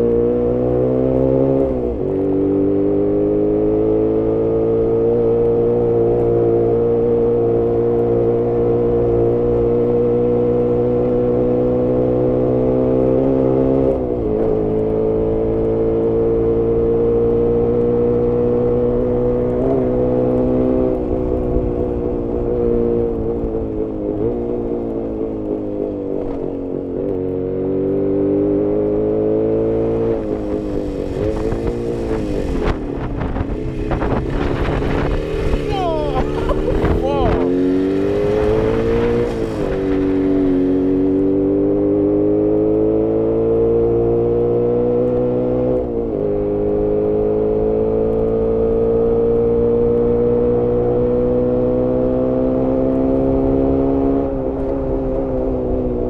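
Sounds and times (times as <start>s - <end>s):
motorcycle engine running: 29.8s - 41.4s.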